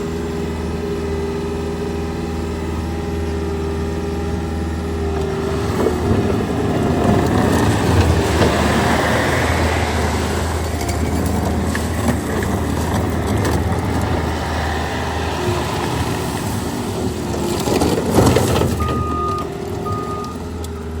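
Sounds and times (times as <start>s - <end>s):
diesel engine running: 0.0s - 21.0s
backup alarm beeps: 18.8s - 20.9s.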